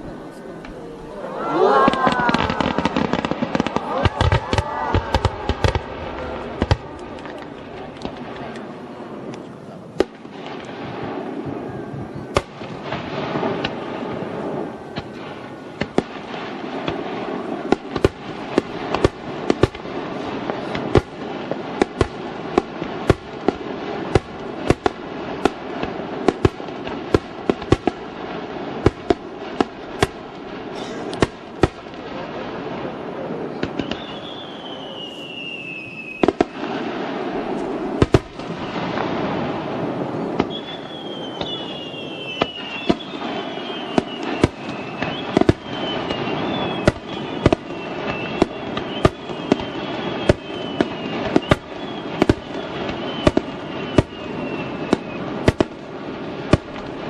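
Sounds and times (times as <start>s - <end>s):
fireworks bangs: 0.0s - 57.0s
fireworks crackle: 0.0s - 57.0s
falling firework whistle: 0.8s - 7.6s, 33.6s - 55.9s.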